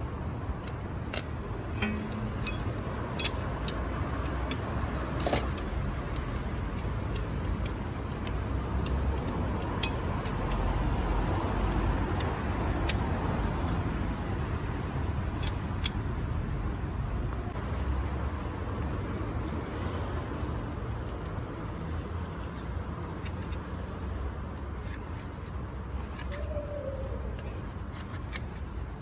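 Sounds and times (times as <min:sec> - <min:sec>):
metal tools clinking: 0:01.2 - 0:06.5, 0:07.1 - 0:10.7.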